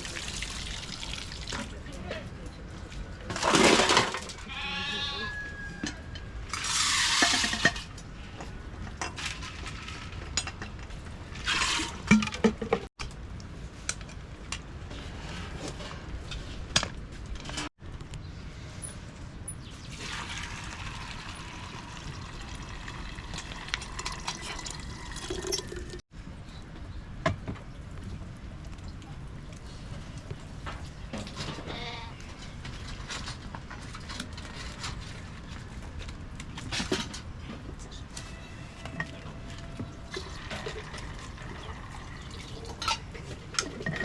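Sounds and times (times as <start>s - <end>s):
water pouring and splashing: 0.0s - 1.8s, 19.9s - 26.0s, 39.9s - 44.0s.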